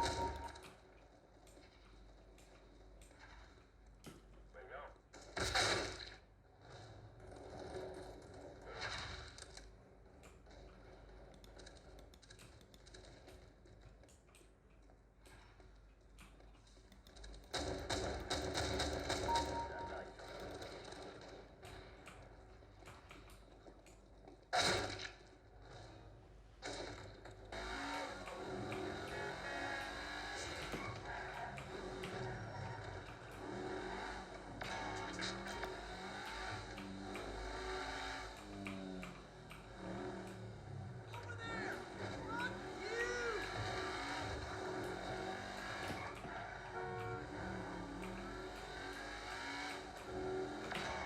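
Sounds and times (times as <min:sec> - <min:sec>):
background music: 0:00.0 - 0:00.7, 0:19.2 - 0:20.1
sharp clicks: 0:09.4 - 0:19.7
car engine running: 0:15.6 - 0:51.0.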